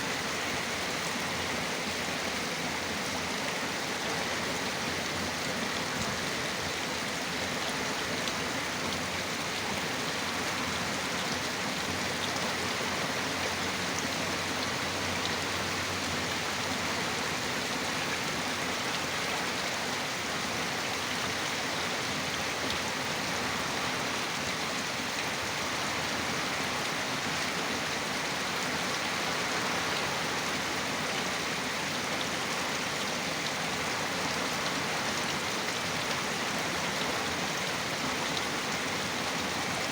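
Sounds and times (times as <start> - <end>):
heavy rain falling: 23.4 - 39.9.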